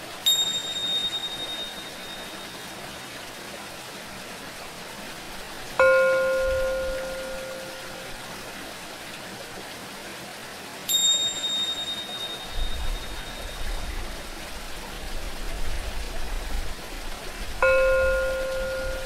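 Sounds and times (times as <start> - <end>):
running water: 0.0 - 19.0
singing bowl ringing: 0.2 - 2.9, 5.8 - 8.4, 10.9 - 13.9, 17.6 - 19.0
tingsha cymbals ringing: 0.2 - 2.9, 5.8 - 8.4, 10.9 - 14.0, 17.6 - 19.0.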